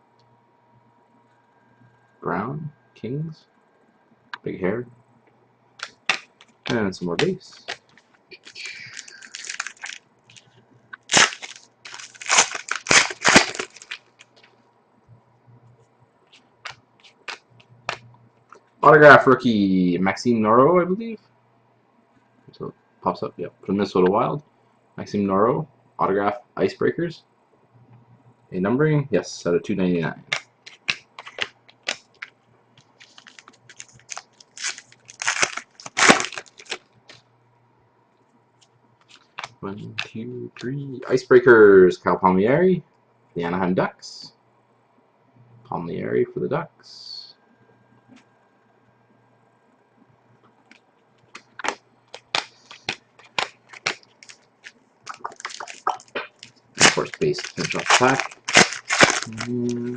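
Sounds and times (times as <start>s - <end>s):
loud wrapper crunches: 5.8s - 6.5s, 7.2s - 14.5s, 32.9s - 36.8s, 51.3s - 59.7s
plastic wrapper crinkling: 5.8s - 14.6s, 16.3s - 18.0s, 30.2s - 37.2s, 39.0s - 39.6s, 50.7s - 59.7s
cards clicking and scraping: 16.3s - 18.1s, 30.3s - 36.8s, 51.2s - 59.5s.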